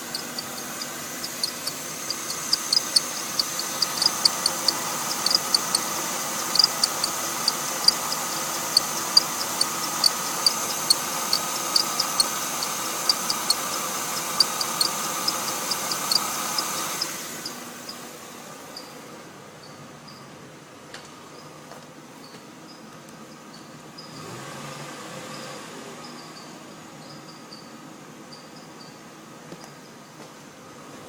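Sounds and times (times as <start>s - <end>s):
belt pulley squeaks: 0.0s - 17.6s
car engine running: 0.0s - 18.0s.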